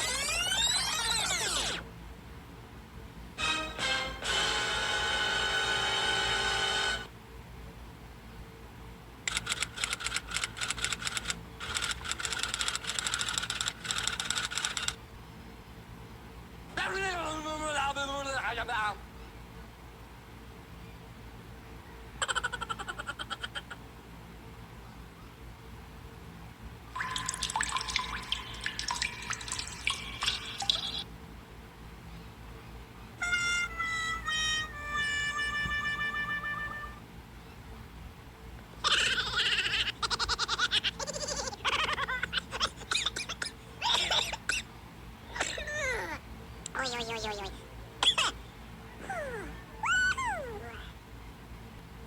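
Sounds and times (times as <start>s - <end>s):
buzzy horn-like tone: 3.4s - 7.1s, 33.2s - 37.0s
rapid typing clicks: 9.3s - 15.0s
plinking water-drop sounds: 27.0s - 30.7s.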